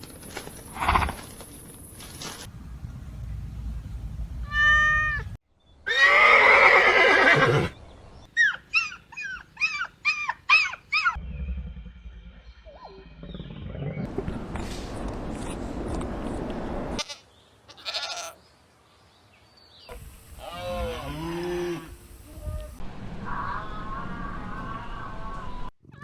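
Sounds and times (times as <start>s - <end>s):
rustling noise: 0.0s - 2.6s, 14.1s - 17.0s
horse whinnying: 5.9s - 7.7s.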